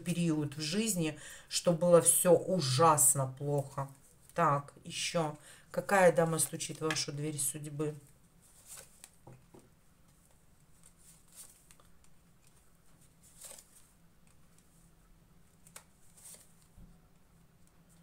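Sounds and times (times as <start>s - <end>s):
cards rustling and clicking: 8.4s - 14.8s, 15.5s - 16.8s.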